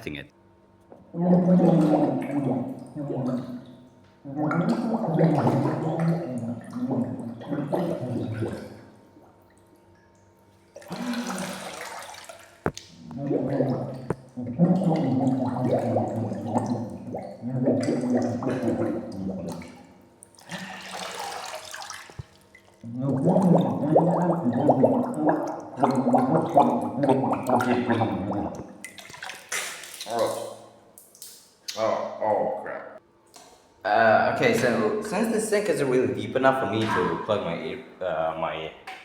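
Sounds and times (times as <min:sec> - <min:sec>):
person making wordless sounds: 0:00.0 - 0:00.3, 0:12.7 - 0:19.6, 0:22.8 - 0:28.6, 0:29.6 - 0:30.6, 0:31.7 - 0:32.9, 0:33.9 - 0:38.8.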